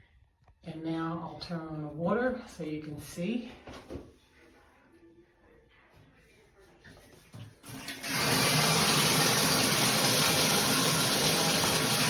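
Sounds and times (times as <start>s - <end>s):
shower spray running: 7.6s - 12.0s.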